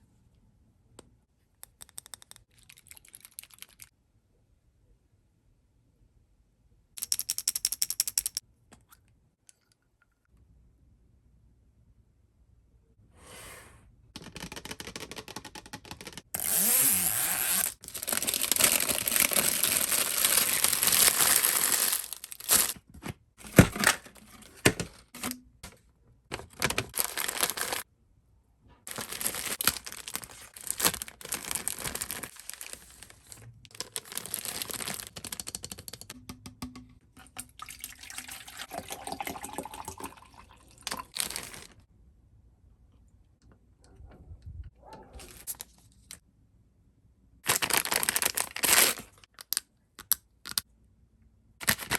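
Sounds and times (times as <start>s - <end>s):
plastic packaging crinkling: 16.4s - 25.3s, 26.3s - 27.8s, 28.9s - 35.7s, 40.9s - 41.8s, 47.5s - 49.2s, 51.6s - 51.9s
water pouring and sloshing: 37.1s - 41.7s.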